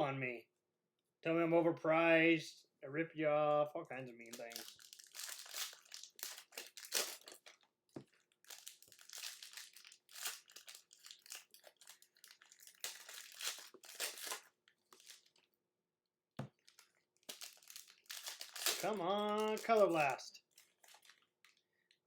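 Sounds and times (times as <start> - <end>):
plastic wrapper crinkling: 4.2 - 15.5, 16.4 - 22.0.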